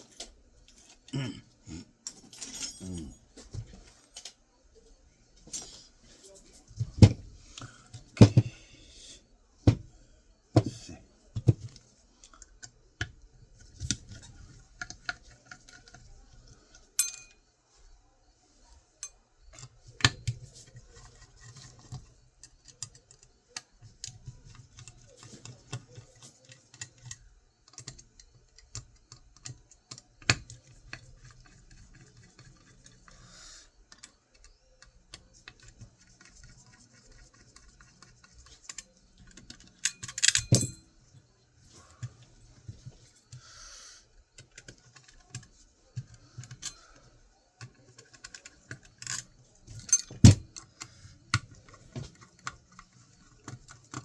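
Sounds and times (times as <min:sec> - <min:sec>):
small tools clicking and scraping metal: 0:00.0 - 0:01.1, 0:02.0 - 0:04.4, 0:05.5 - 0:06.6, 0:16.7 - 0:17.4, 0:19.0 - 0:41.2, 0:44.3 - 0:54.0
metal parts clattering: 0:02.1 - 0:03.2, 0:17.0 - 0:17.4, 0:39.8 - 0:40.8, 0:49.8 - 0:50.4.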